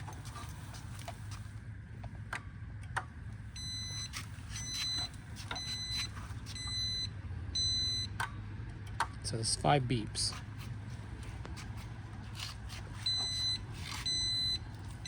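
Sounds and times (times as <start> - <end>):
low steady hum: 0.0 - 15.0
short high beeps: 3.6 - 8.1, 13.1 - 14.6.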